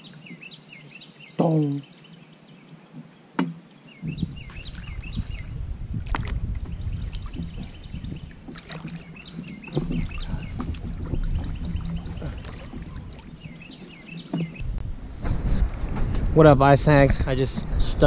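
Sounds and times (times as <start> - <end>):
songbirds chirping: 0.0 - 14.8
low rumble: 14.6 - 18.0.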